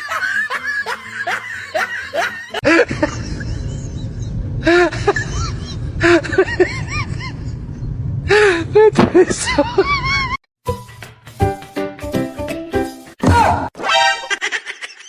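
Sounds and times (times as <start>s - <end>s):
laughter: 0.0s - 7.6s, 9.0s - 10.4s, 14.3s - 15.0s
steady low rumble: 2.6s - 10.2s
music: 10.6s - 14.3s.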